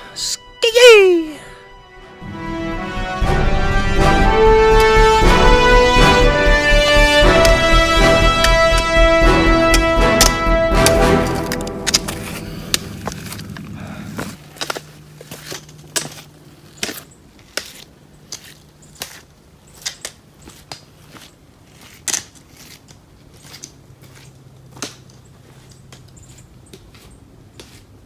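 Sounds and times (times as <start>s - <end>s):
footsteps on rocky trail: 7.2s - 28.0s.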